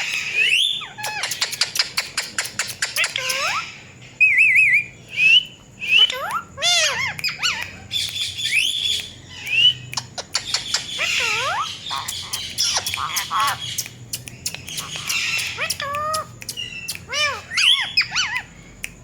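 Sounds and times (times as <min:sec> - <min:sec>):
parakeet whistles and squawks: 0:00.0 - 0:18.5
sharp clicks: 0:01.0 - 0:03.6, 0:07.1 - 0:11.0, 0:11.8 - 0:17.4.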